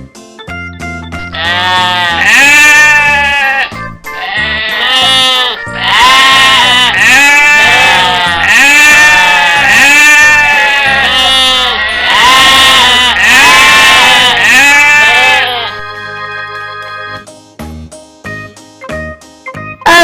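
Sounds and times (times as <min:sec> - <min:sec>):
background music with beat: 0:00.0 - 0:02.3, 0:15.7 - 0:19.9
sheep bleating: 0:01.3 - 0:15.8.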